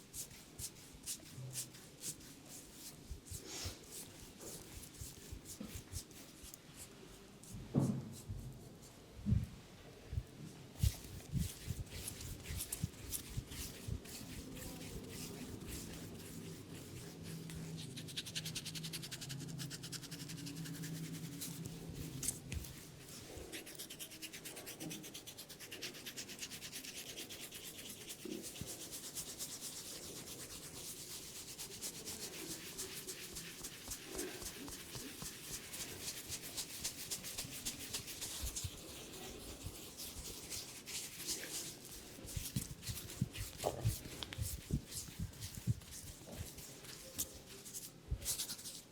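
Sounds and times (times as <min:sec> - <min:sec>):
fingers scratching through hair: 0:10.8 - 0:48.9.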